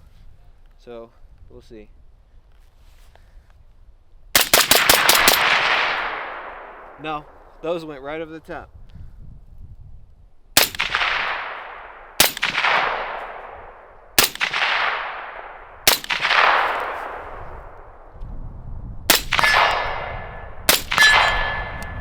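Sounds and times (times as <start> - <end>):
rifle shots echoing: 4.4 - 7.9, 10.6 - 18.1, 19.1 - 22.0.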